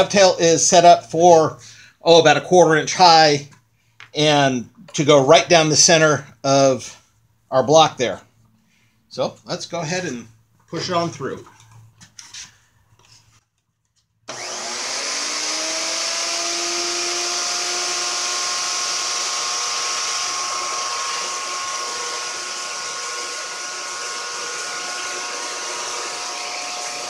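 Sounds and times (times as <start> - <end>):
wood router motor whining: 14.3 - 27.0.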